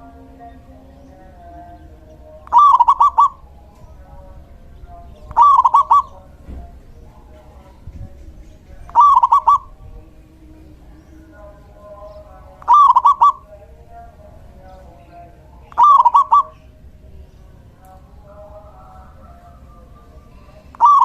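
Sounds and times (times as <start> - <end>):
dove singing stuttering phrases: 0.0 - 21.0
soft bird notes: 4.8 - 9.9.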